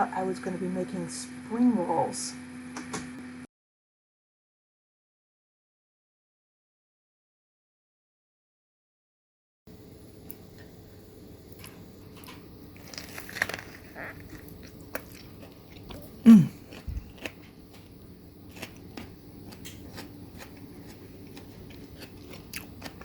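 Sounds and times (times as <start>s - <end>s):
food crunching and crackling: 11.4s - 23.0s.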